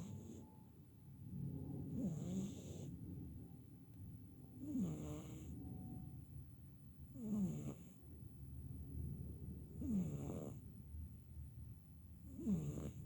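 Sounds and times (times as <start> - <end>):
person snoring: 4.6 - 5.5, 12.4 - 13.0.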